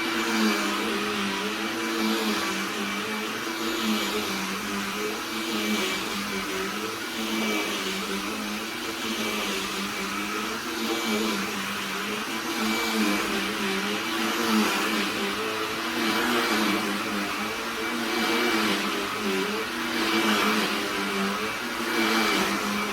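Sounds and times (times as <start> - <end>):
handheld vacuum cleaner running: 0.0 - 22.9.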